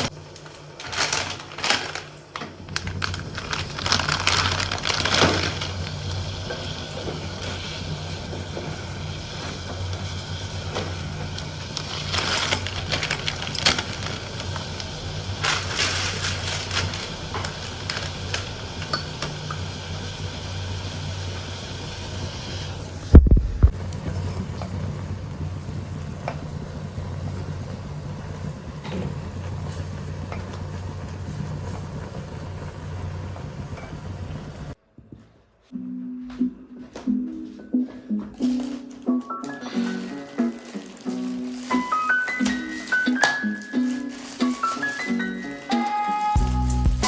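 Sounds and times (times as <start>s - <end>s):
kitchen clatter and clicks: 0.0s - 7.6s
low mechanical hum: 0.0s - 35.2s.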